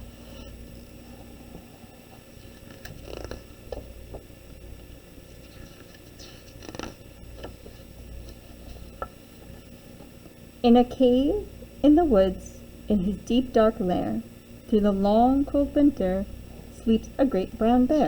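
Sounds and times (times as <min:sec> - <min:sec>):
low steady hum: 0:00.0 - 0:18.0
book page rustling: 0:02.4 - 0:04.3, 0:05.3 - 0:09.6.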